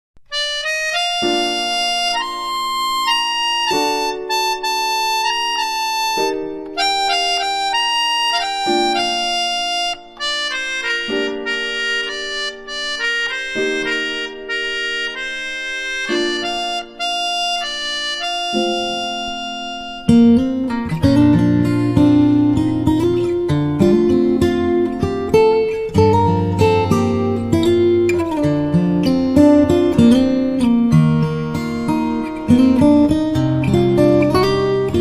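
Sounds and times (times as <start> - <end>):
reedy wind instrument playing chords: 0.3 - 35.0
strummed acoustic guitar: 18.2 - 35.0.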